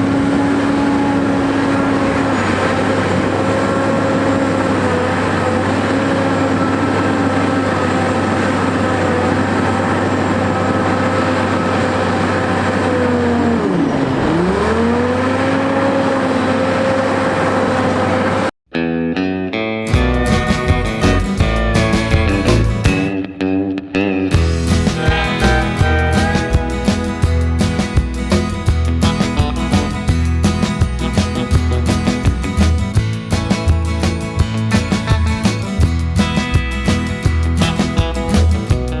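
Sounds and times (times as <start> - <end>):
wheel loader diesel engine running: 0.0 - 18.5, 19.9 - 23.1, 24.3 - 39.0.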